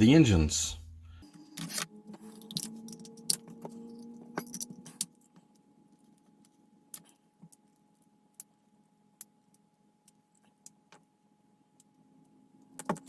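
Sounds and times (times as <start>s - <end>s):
small parts clicking and clinking: 1.6s - 11.0s.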